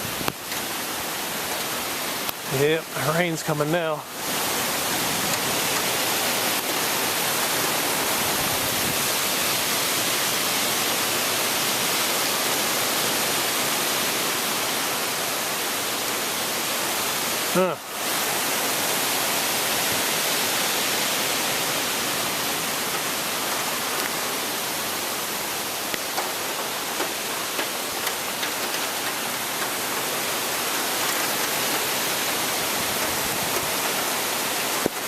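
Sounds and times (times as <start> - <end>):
heavy rain falling: 0.0 - 35.0
raindrops ticking close by: 0.1 - 8.3, 21.4 - 35.0.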